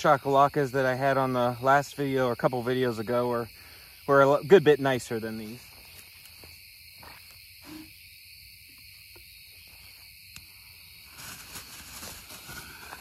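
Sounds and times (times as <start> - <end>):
night insects chirring: 0.0 - 13.0
soft rustling: 11.0 - 13.0.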